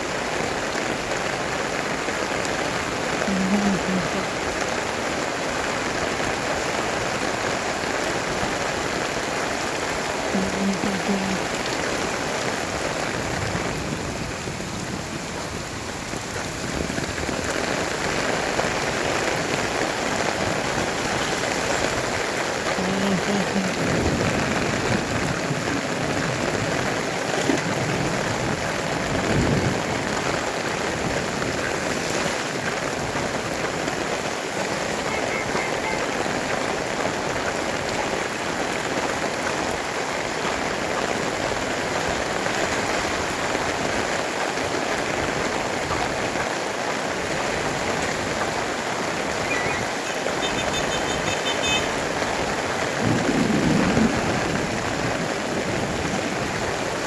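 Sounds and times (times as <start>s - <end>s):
heavy rain pouring: 0.0s - 57.0s.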